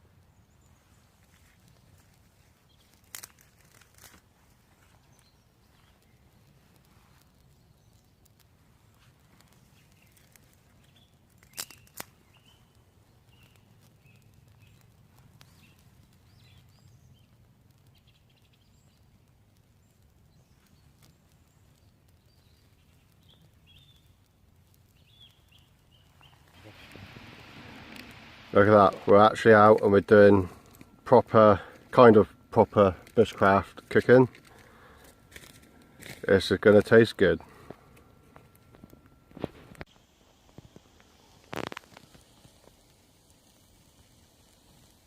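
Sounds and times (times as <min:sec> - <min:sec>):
steady low rumble: 0:12.0 - 0:45.0.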